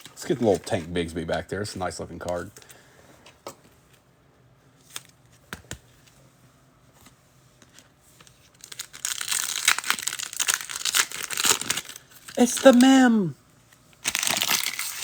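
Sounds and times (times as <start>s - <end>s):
wrapper crinkling and tearing: 8.3s - 13.2s, 14.0s - 15.0s.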